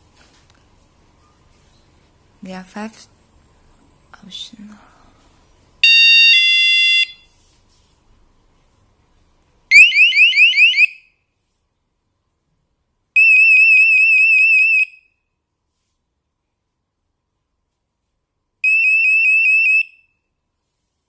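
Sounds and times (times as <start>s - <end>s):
electronic alarm tones: 5.8s - 7.2s.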